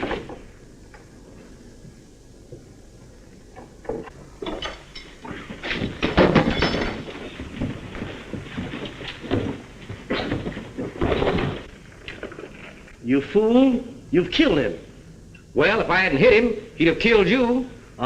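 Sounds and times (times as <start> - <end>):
knocks against furniture: 5.3 - 11.7
thuds of blows and bodies: 5.3 - 11.8.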